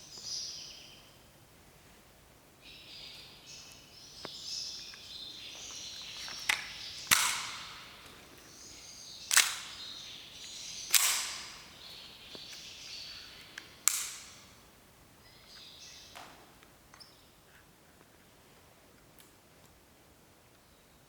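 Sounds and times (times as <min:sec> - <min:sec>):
birds chirping: 0:02.6 - 0:16.2
sharp pistol click: 0:06.5 - 0:08.0, 0:09.3 - 0:09.9, 0:10.9 - 0:11.8, 0:13.8 - 0:14.5
air pistol shots: 0:06.6 - 0:08.0, 0:09.3 - 0:10.0, 0:10.8 - 0:11.8, 0:13.8 - 0:14.5.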